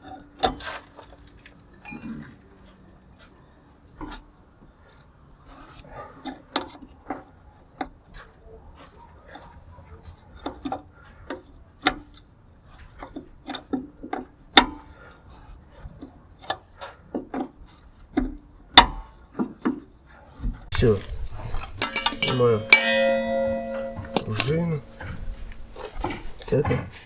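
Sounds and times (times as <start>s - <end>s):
hand tools clinking on metal: 1.9s - 2.3s, 20.7s - 27.0s.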